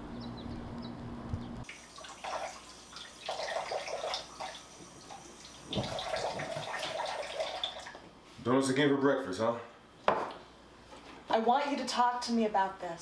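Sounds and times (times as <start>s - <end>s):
water splashing into a sink: 1.7s - 8.0s.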